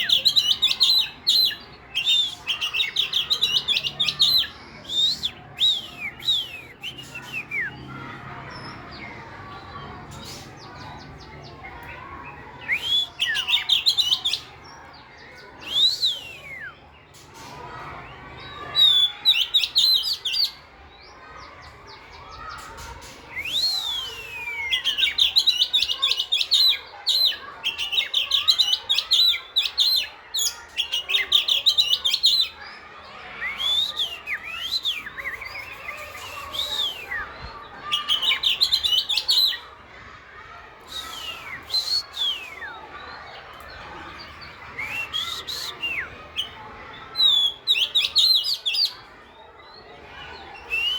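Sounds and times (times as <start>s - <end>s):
bird singing whistled phrases: 0.0s - 7.8s, 12.6s - 14.4s, 15.6s - 16.8s, 23.3s - 26.2s, 33.4s - 39.6s, 40.9s - 42.8s, 44.8s - 46.5s, 50.7s - 50.9s.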